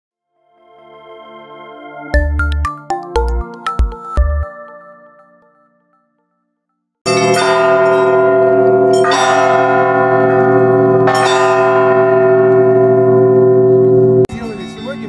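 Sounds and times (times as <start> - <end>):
church bells ringing: 7.1 - 15.0.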